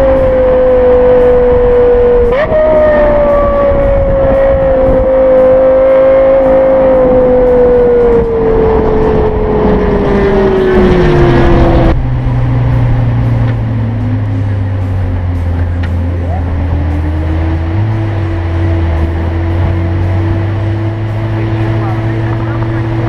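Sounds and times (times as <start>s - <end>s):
low steady engine hum: 0.0s - 23.0s.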